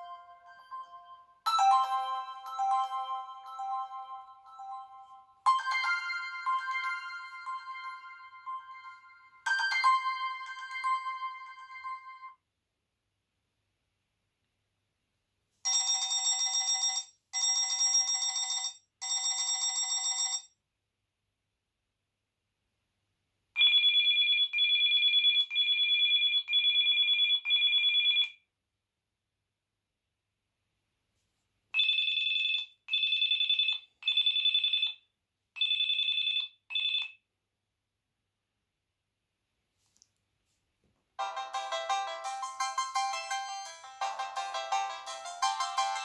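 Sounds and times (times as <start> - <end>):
trilling phone ringtone: 0.0 - 12.3, 35.6 - 37.1, 41.2 - 46.0
electronic telephone ring: 15.7 - 20.5, 35.6 - 37.2.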